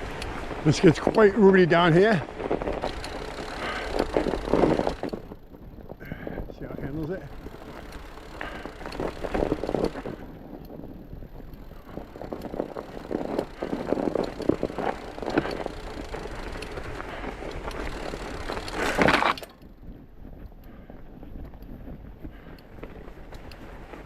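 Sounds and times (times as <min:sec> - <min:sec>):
bike crunching over snow: 0:00.0 - 0:24.0
bike knocks and rattles: 0:00.0 - 0:24.0.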